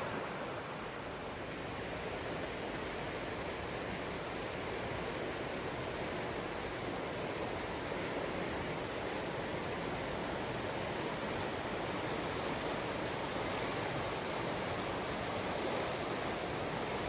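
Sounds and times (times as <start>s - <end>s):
creek rushing over rocks: 0.0s - 3.3s.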